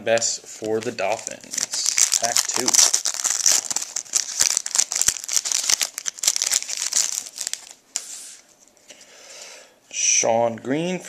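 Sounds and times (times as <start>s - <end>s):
wrapper tearing and crinkling: 0.6s - 7.8s.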